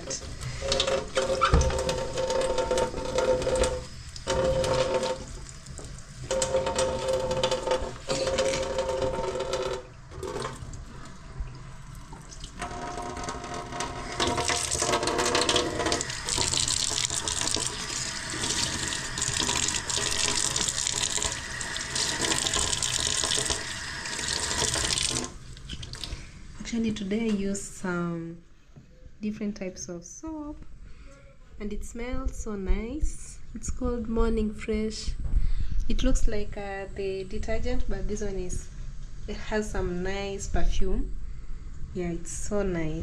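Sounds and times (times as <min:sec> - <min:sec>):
tap running into sink: 0:00.6 - 0:10.7, 0:12.2 - 0:26.2
water splashing over utensils: 0:12.1 - 0:26.2.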